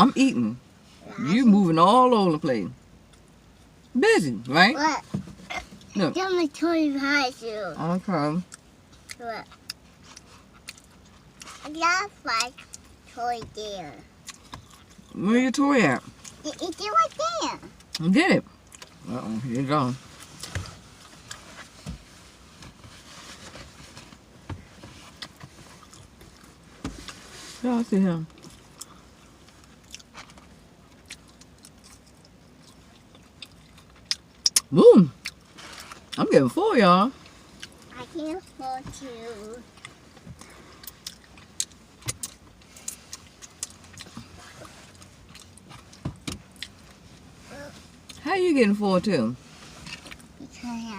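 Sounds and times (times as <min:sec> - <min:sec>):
chewing and mouth smacking: 0:28.4 - 0:35.5, 0:39.8 - 0:46.8.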